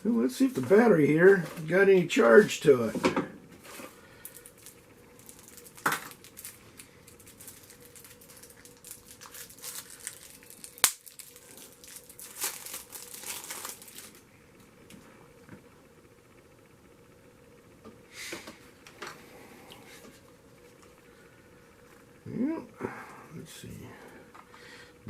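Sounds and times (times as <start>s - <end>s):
plastic packaging crinkling: 4.2s - 14.3s.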